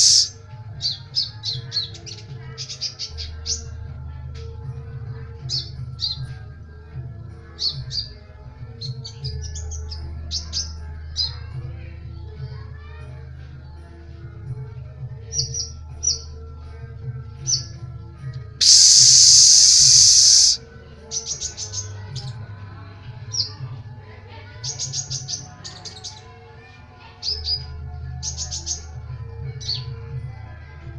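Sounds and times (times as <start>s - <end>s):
bird trilling and chirping: 0.0s - 0.3s, 18.6s - 20.6s
loud hiss: 0.0s - 0.3s, 18.6s - 20.6s
quiet background music: 0.0s - 30.9s.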